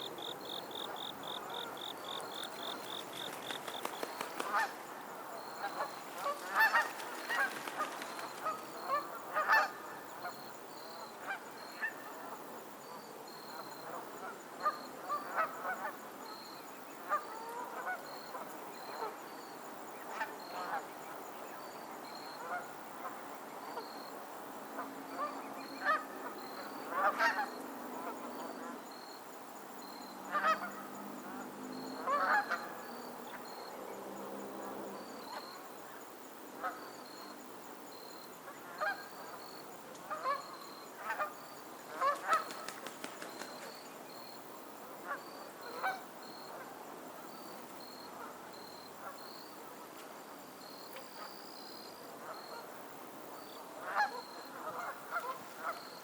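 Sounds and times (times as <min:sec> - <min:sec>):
geese honking: 0:06.2 - 0:07.8.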